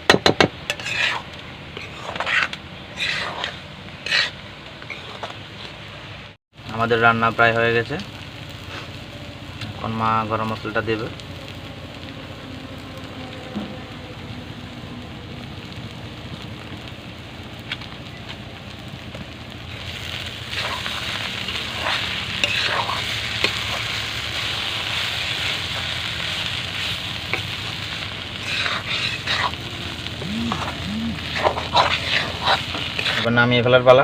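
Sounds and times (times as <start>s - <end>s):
curry sizzling in a pan: 0.2s - 33.5s
spoon stirring and scraping: 0.7s - 5.4s, 20.5s - 24.6s, 28.4s - 29.6s, 30.5s - 33.3s.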